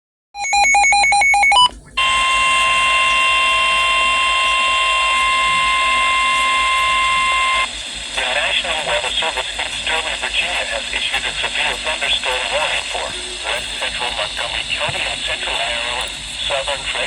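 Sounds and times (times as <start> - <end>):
rapid electronic beeps: 0.4 - 4.7, 9.9 - 17.0.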